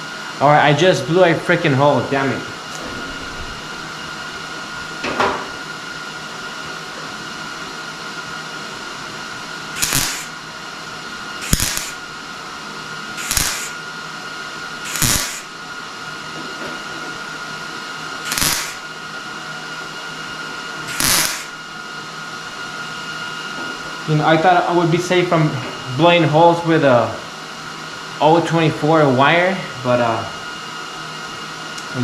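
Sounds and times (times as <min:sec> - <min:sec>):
steady background hum: 0:00.0 - 0:32.0
welder bursts: 0:09.3 - 0:12.4, 0:13.0 - 0:13.9, 0:14.6 - 0:15.6, 0:18.2 - 0:19.0, 0:20.7 - 0:21.8.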